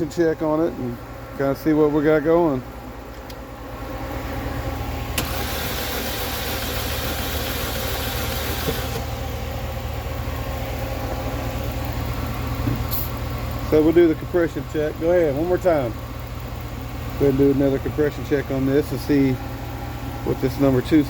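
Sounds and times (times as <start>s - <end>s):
engine cranking without firing: 3.0s - 9.5s.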